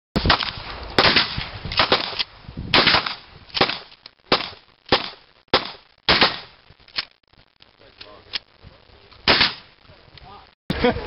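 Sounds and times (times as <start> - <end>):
shotgun shots with echo: 0.2 - 6.5, 9.3 - 9.6.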